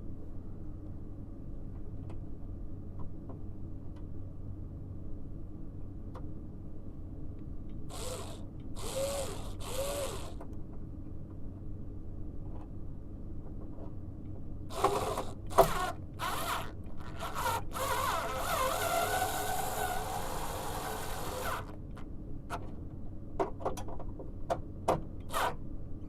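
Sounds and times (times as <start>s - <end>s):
steady low hum: 0.0s - 23.4s
screws driven in ratcheting bursts: 7.9s - 10.4s, 14.7s - 21.8s.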